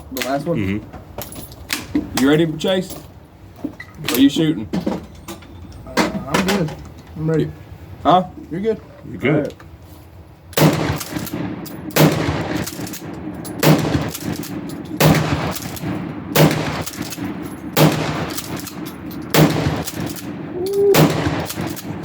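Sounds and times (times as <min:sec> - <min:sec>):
shotgun blasts with echo: 0:10.6 - 0:22.0.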